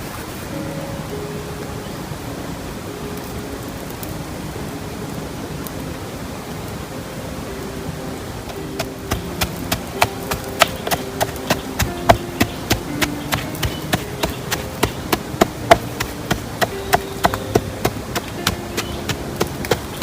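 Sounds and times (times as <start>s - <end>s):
faint low held notes: 0.4s - 20.0s
rhythmic knocking: 8.8s - 20.0s.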